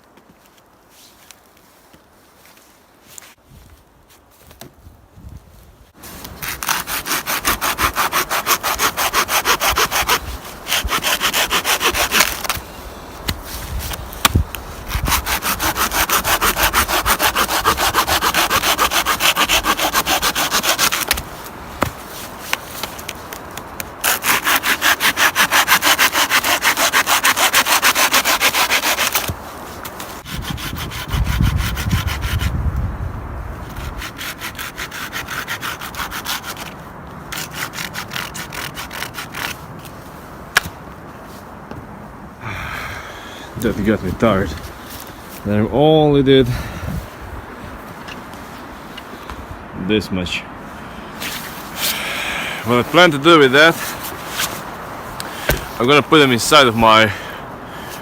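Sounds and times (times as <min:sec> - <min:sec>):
hand saw cutting firewood: 0:06.1 - 0:23.4, 0:24.0 - 0:32.6, 0:33.6 - 0:40.0, 0:51.2 - 0:57.0.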